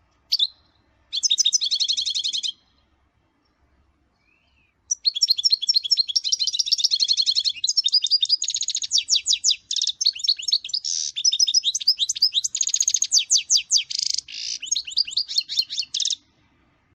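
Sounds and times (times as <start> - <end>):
goldfinch twittering song: 0.3 - 2.8, 4.2 - 16.3.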